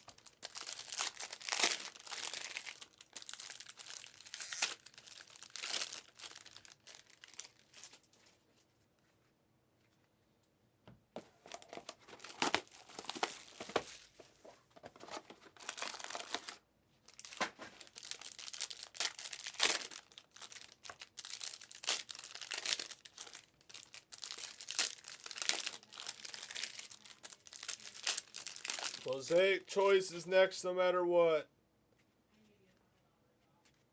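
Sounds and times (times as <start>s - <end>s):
card pack wrappers tearing and crinkling: 0.0s - 8.1s, 11.4s - 14.2s, 14.9s - 29.5s.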